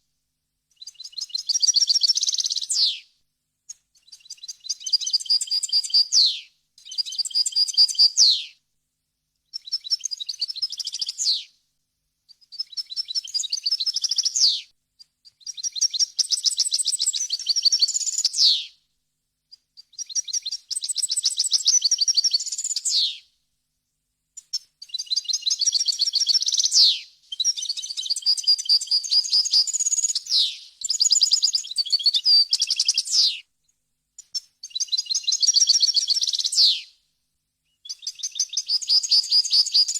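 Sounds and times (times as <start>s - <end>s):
finch singing twittering trills: 24.8s - 33.4s.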